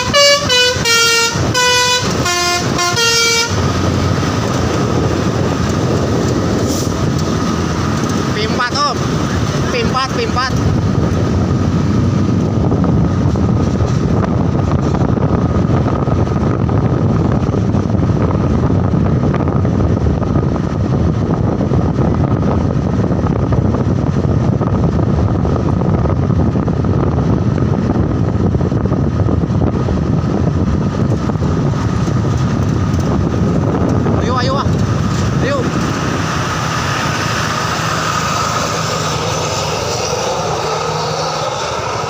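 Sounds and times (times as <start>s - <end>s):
rumble of road vehicles: 0.0s - 42.0s
wind on microphone: 0.0s - 42.0s.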